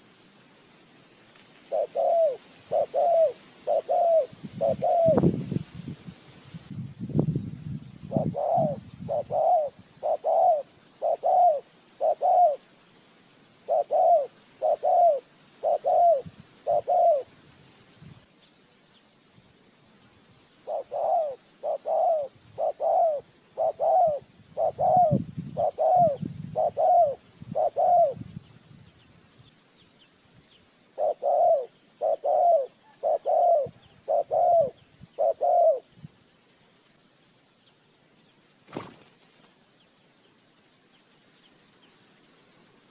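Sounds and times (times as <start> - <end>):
dove cooing: 1.6 - 5.4, 8.1 - 12.7, 13.6 - 17.3, 20.6 - 28.3, 30.9 - 36.0.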